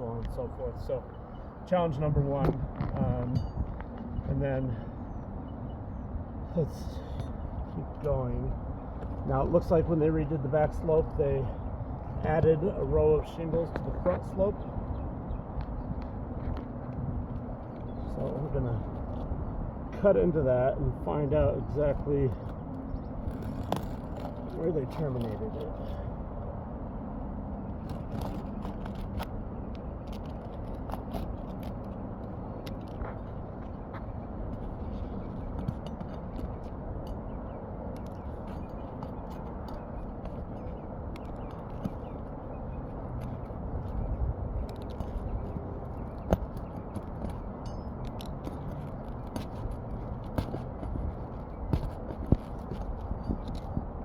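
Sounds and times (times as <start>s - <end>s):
steady low rumble: 0.0s - 54.0s
roof shingles scraping and clicking: 21.0s - 26.1s, 27.7s - 53.9s.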